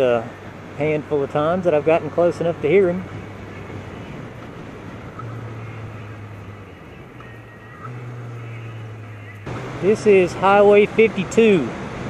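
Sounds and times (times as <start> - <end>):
motorcycle engine running: 2.7 - 11.5.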